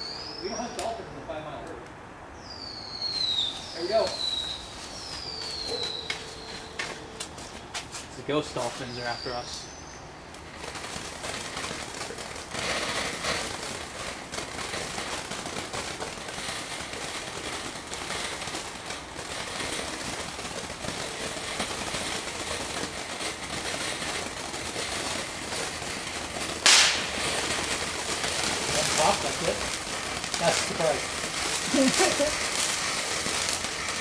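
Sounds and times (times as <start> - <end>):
firework fountain crackling: 0.0 - 34.0
loud firework pop: 26.5 - 34.0.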